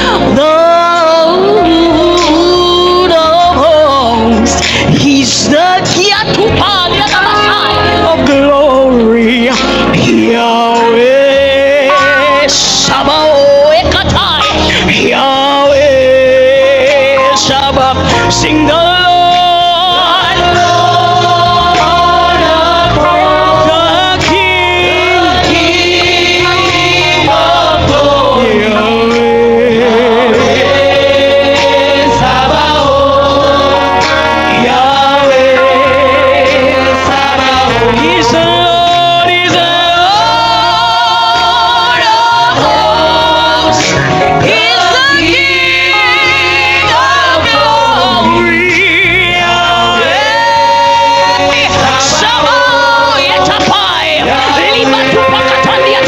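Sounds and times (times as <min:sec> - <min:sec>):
band accompaniment: 0:00.0 - 0:56.0
choir singing long notes: 0:11.7 - 0:13.0, 0:19.0 - 0:56.0.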